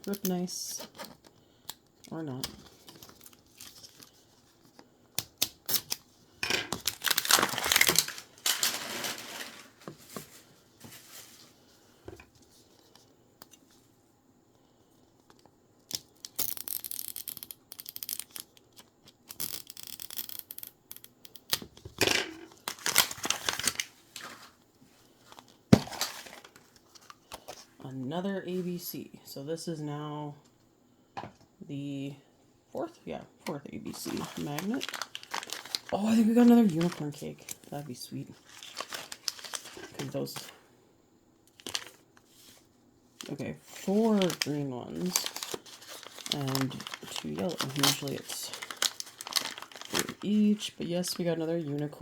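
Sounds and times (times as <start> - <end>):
plastic packaging tearing and crinkling: 2.4 - 4.2, 5.3 - 6.1, 6.7 - 9.8, 15.9 - 20.8, 22.4 - 24.6, 33.9 - 37.8, 38.4 - 40.5, 41.5 - 42.0, 43.7 - 50.6.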